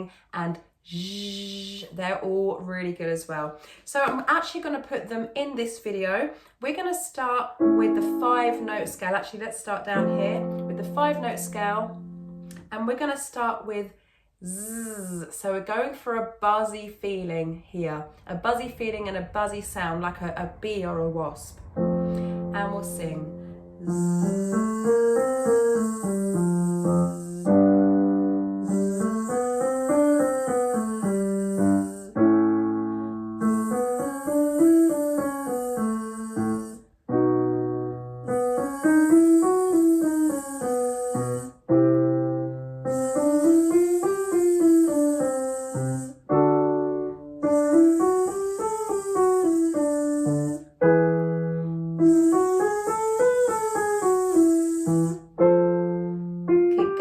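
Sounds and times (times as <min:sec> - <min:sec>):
piano chords: 0:07.6 - 0:09.0, 0:09.9 - 0:12.6, 0:18.1 - 0:57.0
singer buzzing on a scale: 0:23.8 - 0:27.8, 0:28.6 - 0:32.2, 0:33.4 - 0:36.8, 0:38.4 - 0:41.5, 0:42.9 - 0:46.2, 0:47.4 - 0:50.6, 0:52.0 - 0:55.2.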